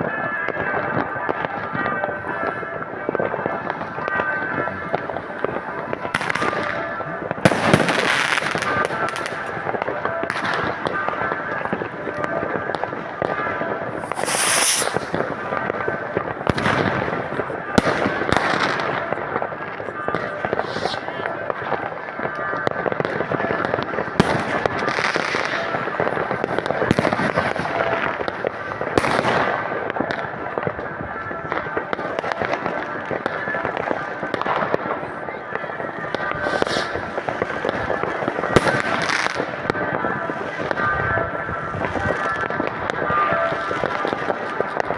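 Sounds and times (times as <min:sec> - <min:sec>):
firecrackers banging and crackling: 0:00.0 - 0:44.9
loud firework bang: 0:14.1 - 0:15.4.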